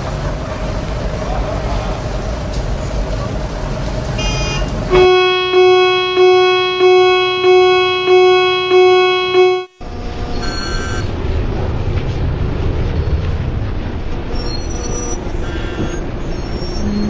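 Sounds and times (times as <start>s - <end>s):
electronic warning bell dinging: 4.9s - 9.8s.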